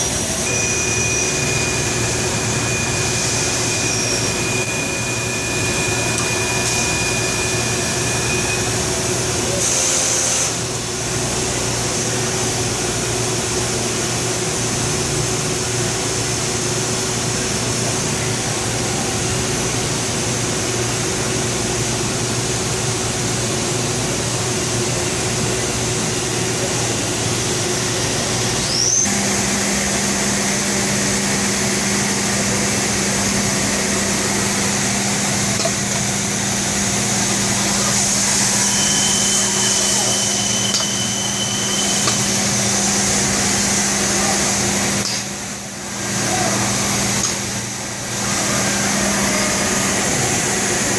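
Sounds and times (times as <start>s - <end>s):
machinery hum and hiss: 0.0s - 50.9s
rising machine whine: 0.3s - 9.3s, 28.6s - 44.6s.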